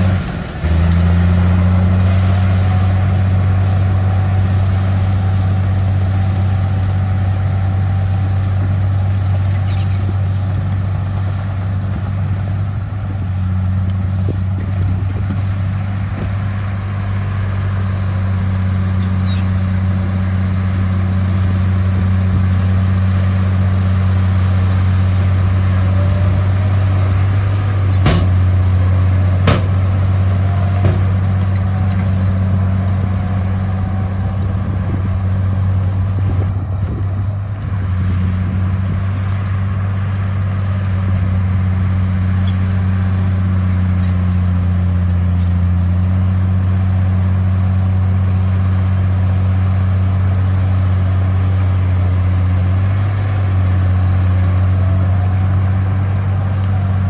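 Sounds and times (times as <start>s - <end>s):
bulldozer diesel engine droning: 0.0s - 57.0s
sharp metallic clanks: 27.6s - 33.1s.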